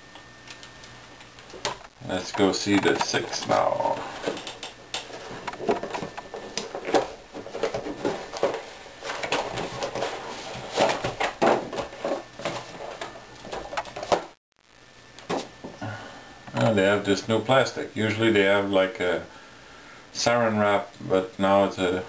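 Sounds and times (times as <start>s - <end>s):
plastic wrap and cardboard handled: 5.1s - 14.3s.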